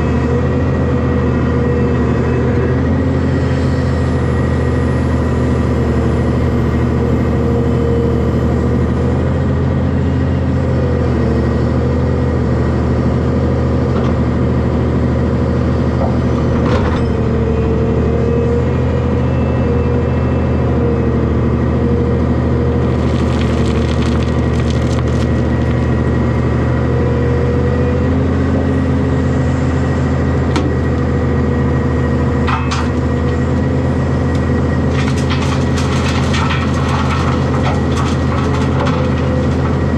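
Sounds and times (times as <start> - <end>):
diesel engine running under load: 0.0 - 39.9
dirt and rock scraping and crunching: 22.8 - 26.4.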